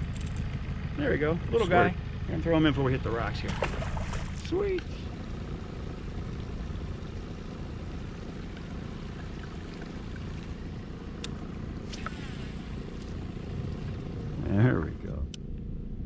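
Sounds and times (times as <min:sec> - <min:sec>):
outboard motor running: 0:00.0 - 0:16.0
water around hull: 0:03.2 - 0:15.0.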